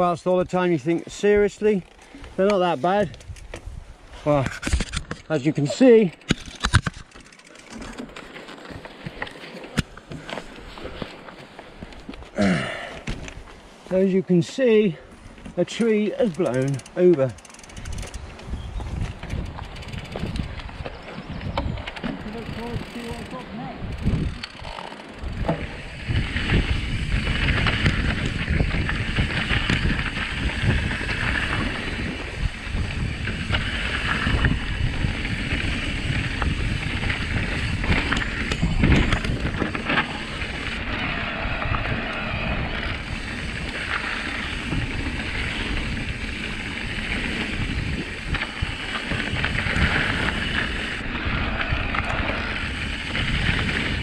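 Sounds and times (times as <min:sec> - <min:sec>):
tyres rumbling on trail: 0:00.0 - 0:54.0
wind buffeting microphone: 0:16.0 - 0:54.0.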